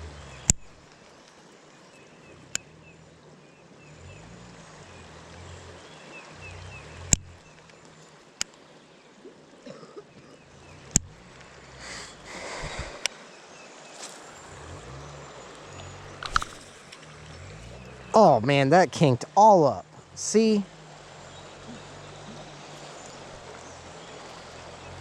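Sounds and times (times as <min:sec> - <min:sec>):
wind rumbling on microphone: 0:10.6 - 0:13.2
fishing line casting rush: 0:10.7 - 0:25.0.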